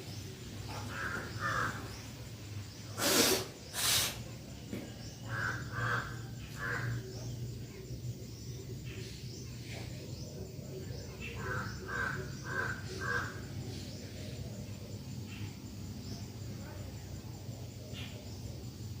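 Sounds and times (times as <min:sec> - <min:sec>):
crows cawing: 0:00.7 - 0:02.0, 0:05.2 - 0:07.2, 0:11.4 - 0:13.5.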